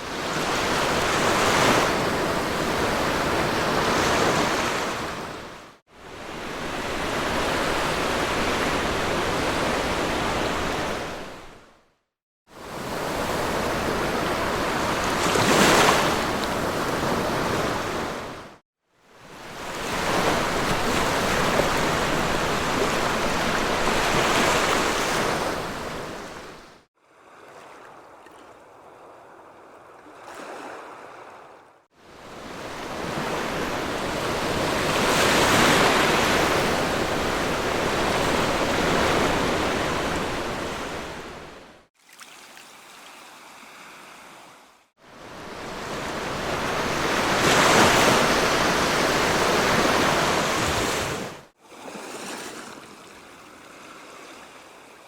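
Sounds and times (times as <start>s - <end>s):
surf washing on beach: 19.3s - 26.8s, 32.2s - 41.8s, 45.1s - 52.8s.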